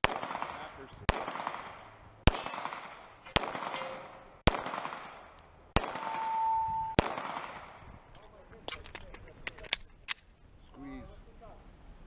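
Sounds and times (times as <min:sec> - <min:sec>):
pistol shots echoing: 0:00.0 - 0:07.8
steady ringing tone: 0:06.0 - 0:07.0.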